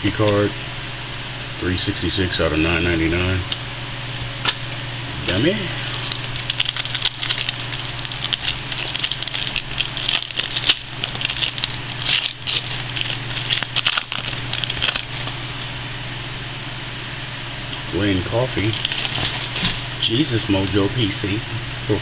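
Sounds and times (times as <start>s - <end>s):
steady low hum: 0.0s - 22.0s
plastic packaging crackling: 5.8s - 15.8s, 18.5s - 20.8s.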